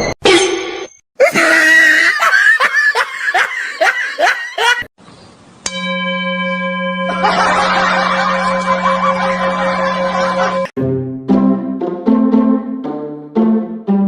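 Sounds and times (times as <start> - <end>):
person laughing hard: 1.2 - 4.9, 7.1 - 10.7.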